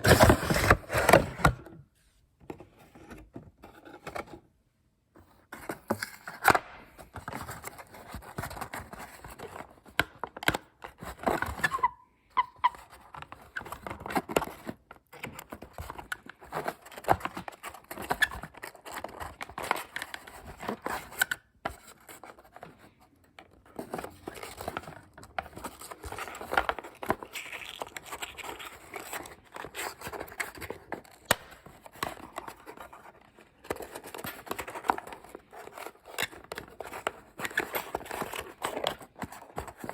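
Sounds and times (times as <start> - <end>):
packaging tearing and crinkling: 26.9 - 31.7.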